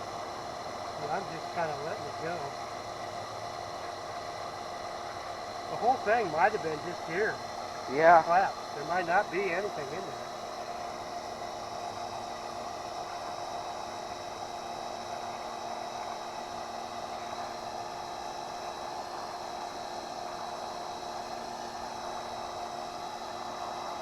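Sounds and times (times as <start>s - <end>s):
pressure washer motor hum: 0.0s - 24.0s.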